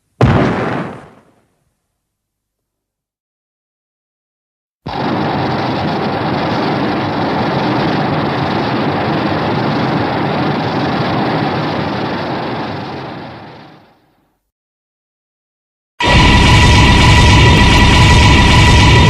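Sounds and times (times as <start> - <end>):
synthetic monster rumbling rush: 4.9 - 13.3.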